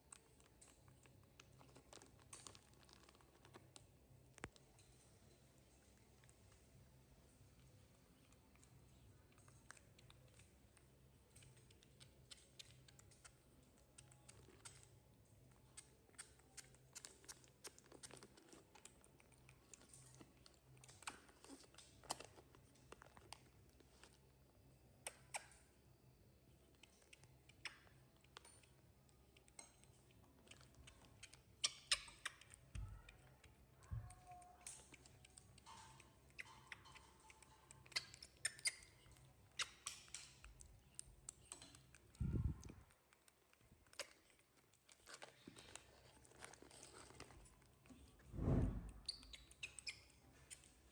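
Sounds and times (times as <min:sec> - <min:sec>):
small clicks and taps: 0:00.1 - 0:06.6.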